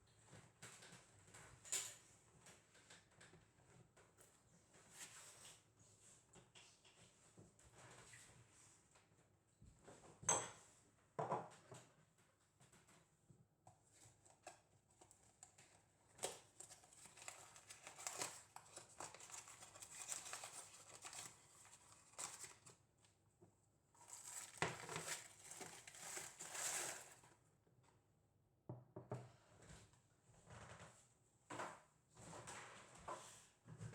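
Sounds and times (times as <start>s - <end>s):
wrapping crinkling and rustling: 15.2s - 22.8s, 24.0s - 27.4s.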